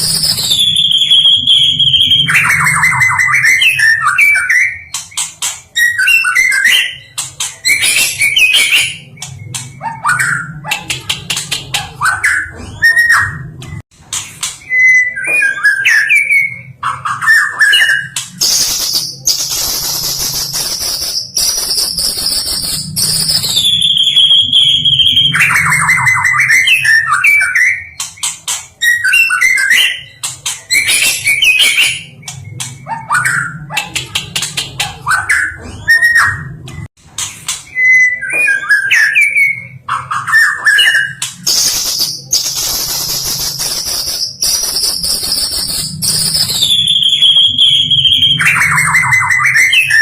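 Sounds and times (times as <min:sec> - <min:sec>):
fast bird trill: 0:14.7 - 0:36.4, 0:37.8 - 0:50.0.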